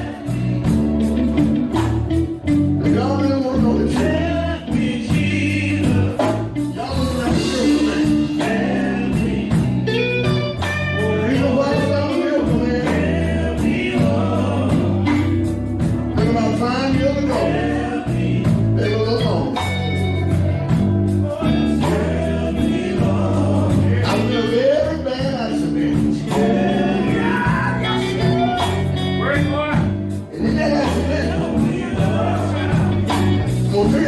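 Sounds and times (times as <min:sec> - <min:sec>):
bass guitar and drums: 0:00.0 - 0:34.0
voices singing: 0:00.0 - 0:34.0.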